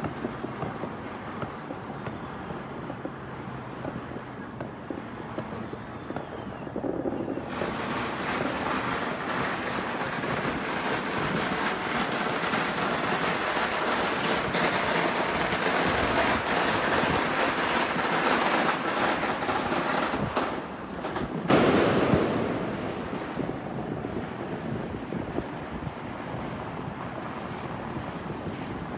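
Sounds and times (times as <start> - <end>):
fireworks crackling: 0.0 - 28.9
loud firework bang: 3.8 - 25.0.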